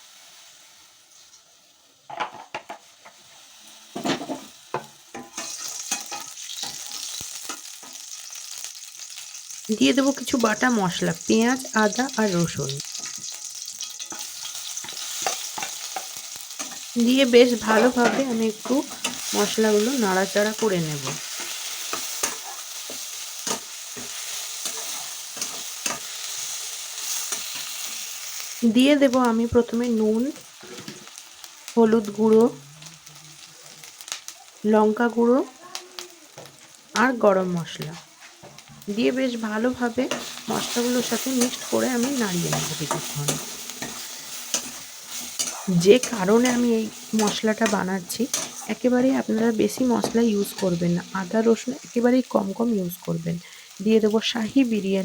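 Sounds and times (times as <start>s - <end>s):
oil sizzling: 0.0s - 55.0s
utensil scraping a pan: 40.1s - 48.8s.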